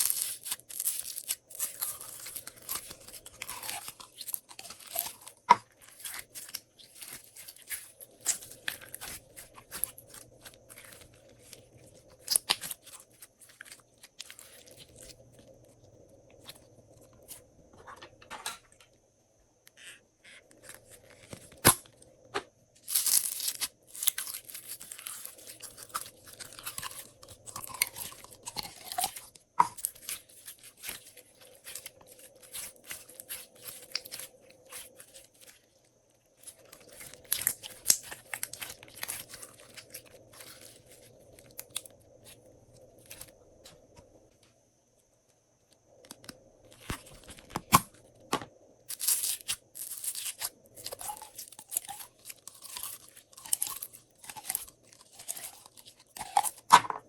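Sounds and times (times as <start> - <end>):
slime crackling and popping: 0.0 - 15.3, 22.8 - 35.7, 36.4 - 42.4, 48.9 - 56.8.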